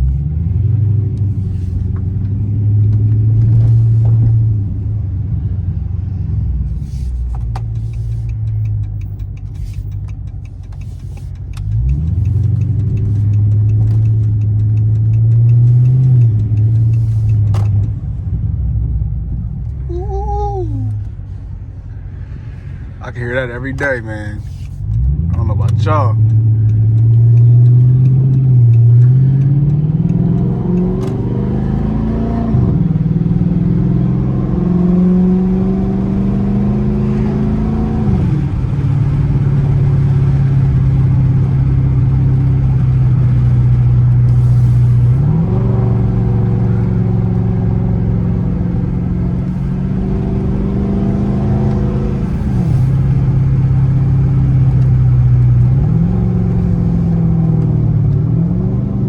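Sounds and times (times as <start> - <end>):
car engine accelerating: 0.0 - 59.0.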